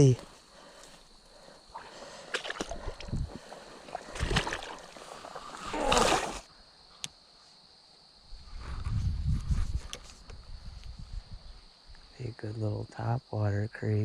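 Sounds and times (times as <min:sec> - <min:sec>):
wading steps through mud and water: 0:01.7 - 0:06.5.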